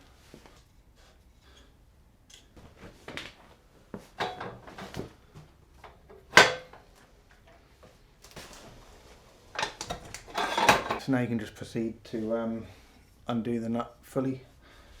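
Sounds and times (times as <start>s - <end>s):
motorcycle stand knocks and clatter: 4.2s - 5.2s, 5.9s - 6.8s, 9.6s - 11.0s
loud sharp clunk: 6.3s - 6.8s.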